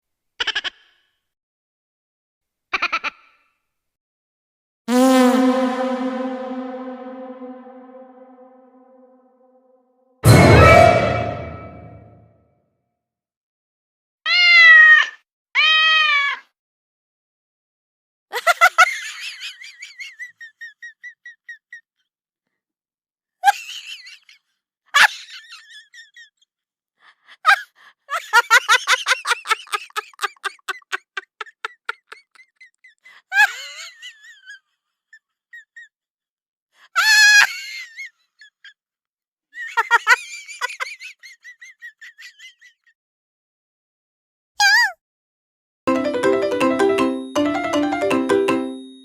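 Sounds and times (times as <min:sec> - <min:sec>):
short sound effects: 0:04.9 - 0:09.2, 0:10.2 - 0:12.2.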